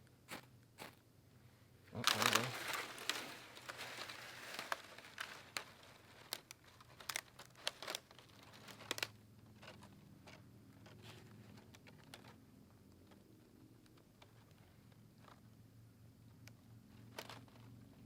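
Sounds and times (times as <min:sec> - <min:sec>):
fire crackling and snapping: 0:02.1 - 0:09.2.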